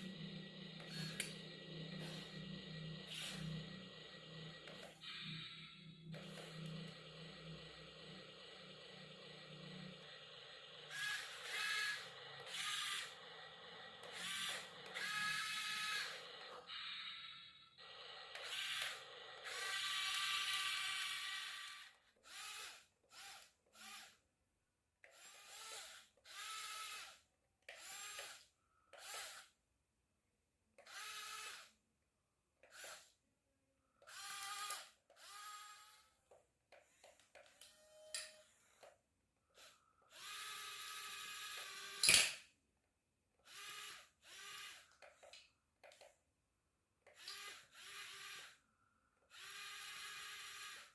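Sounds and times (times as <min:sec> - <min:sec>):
small electric motors whirring: 0:00.0 - 0:24.2, 0:25.0 - 0:29.6, 0:30.8 - 0:31.8, 0:32.6 - 0:33.2, 0:34.0 - 0:42.2, 0:43.4 - 0:46.1, 0:47.0 - 0:48.6, 0:49.2 - 0:50.9.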